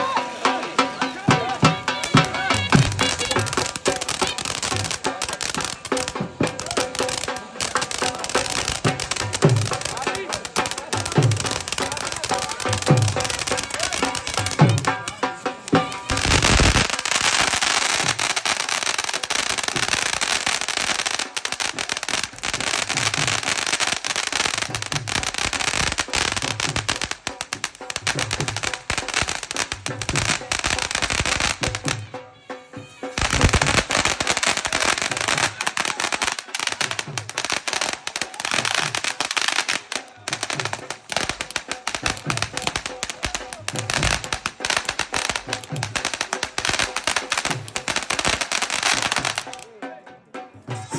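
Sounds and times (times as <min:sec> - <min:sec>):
fireworks crackling: 0:00.0 - 0:50.0
music with steady beat: 0:00.0 - 0:50.9.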